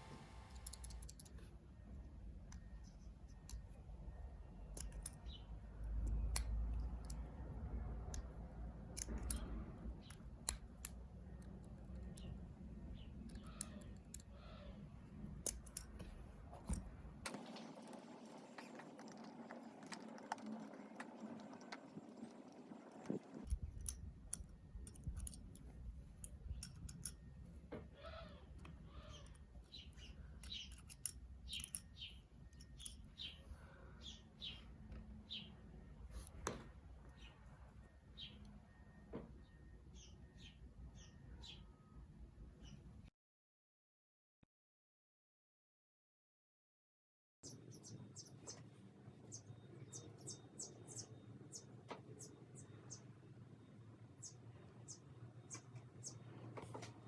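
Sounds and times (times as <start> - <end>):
small objects clicking and scraping: 30.4 - 33.0.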